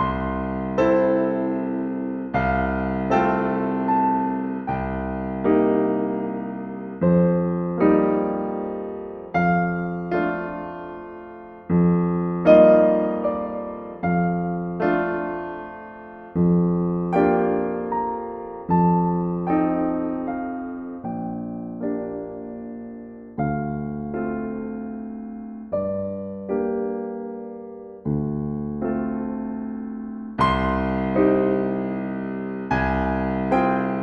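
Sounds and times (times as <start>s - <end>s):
slow solo piano music: 0.0s - 34.0s.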